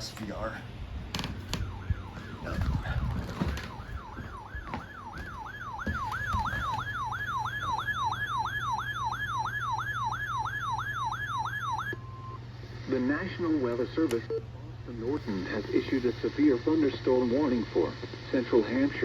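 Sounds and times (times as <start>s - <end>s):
steady low hum: 0.0s - 19.0s
electronic siren alert tone: 1.3s - 12.4s.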